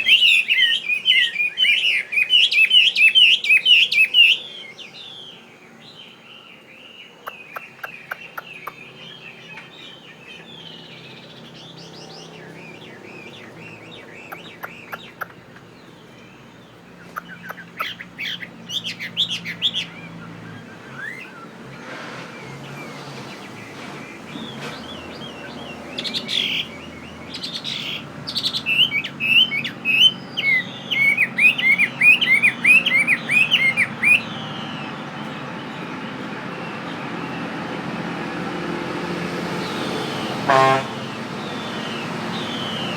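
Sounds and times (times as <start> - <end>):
bird singing whistled phrases: 0.0 - 5.4, 17.1 - 21.5, 27.3 - 35.3.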